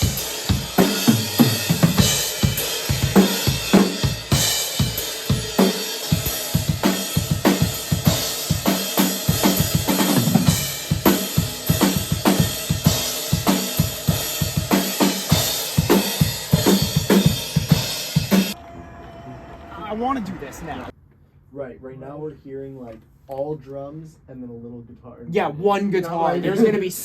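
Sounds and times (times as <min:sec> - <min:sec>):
rock drum beat: 0:00.0 - 0:18.6.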